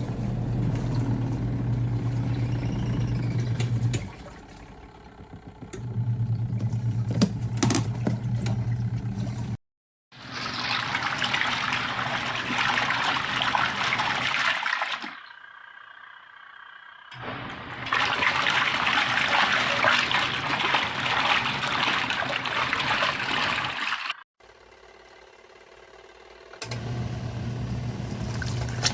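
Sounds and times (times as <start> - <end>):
washing machine motor humming: 0.0 - 9.6, 10.2 - 15.4, 16.6 - 24.2, 24.8 - 28.9
water rushing through machine: 10.2 - 15.3, 17.1 - 24.2.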